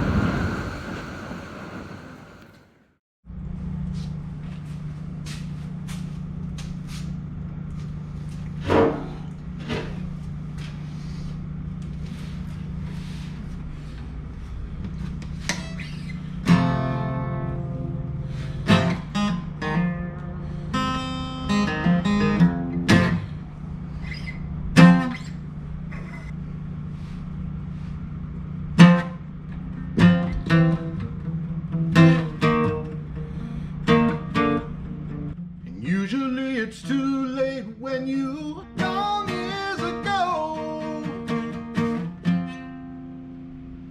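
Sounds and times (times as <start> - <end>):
steady low hum: 0.0 - 36.0
acoustic guitar: 15.5 - 26.3, 28.8 - 43.9.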